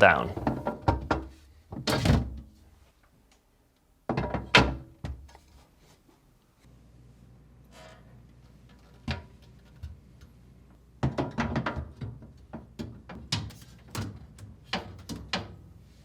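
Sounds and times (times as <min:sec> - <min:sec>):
shelf clicks and knocks: 0:11.0 - 0:15.6.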